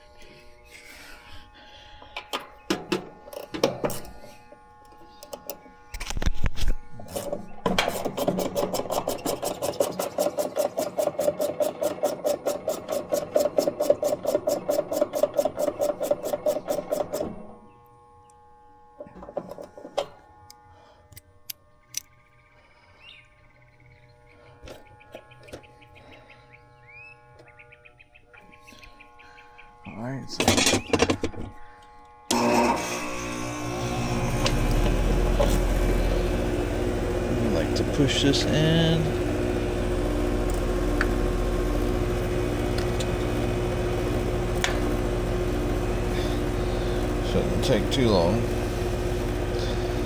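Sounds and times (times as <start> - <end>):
air conditioner humming: 33.2 - 50.0.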